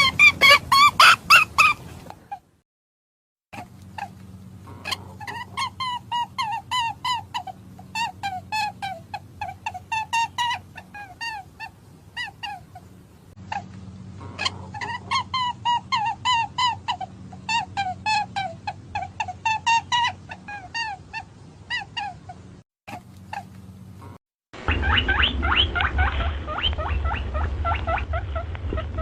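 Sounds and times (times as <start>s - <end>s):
animal chirping squeaks: 0.0s - 1.8s, 4.8s - 12.9s, 24.7s - 28.9s.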